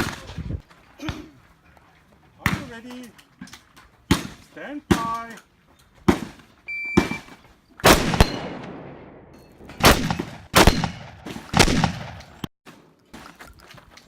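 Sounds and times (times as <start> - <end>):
shotgun shots: 4.1 - 5.3, 6.1 - 6.4, 7.0 - 12.5.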